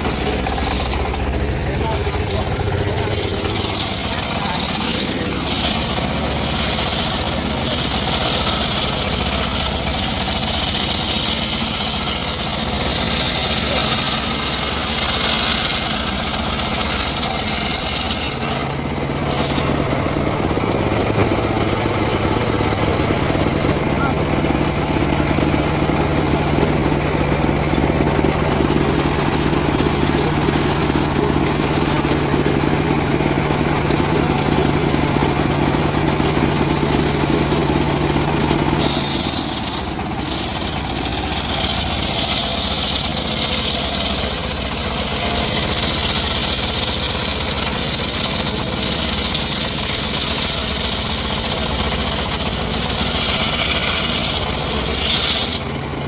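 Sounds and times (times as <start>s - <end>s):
engine-driven wood saw running: 0.0s - 56.0s.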